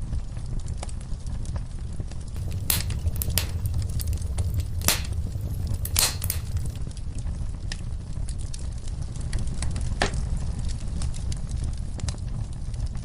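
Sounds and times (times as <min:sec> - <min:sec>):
fire flames rumbling: 0:02.3 - 0:13.0
fire popping: 0:02.4 - 0:06.8
fire crackling: 0:02.4 - 0:06.9.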